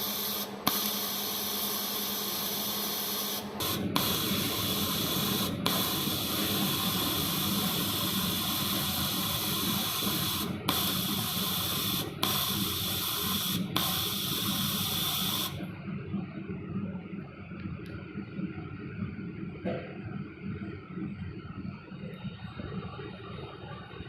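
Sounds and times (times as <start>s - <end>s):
welding arc hissing: 0.0s - 15.7s
welding machine low hum: 0.0s - 24.0s.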